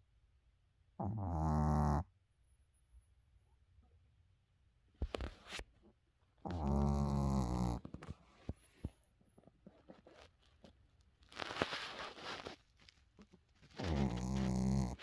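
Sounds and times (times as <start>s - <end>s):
loud rattling snore: 13.8s - 15.0s.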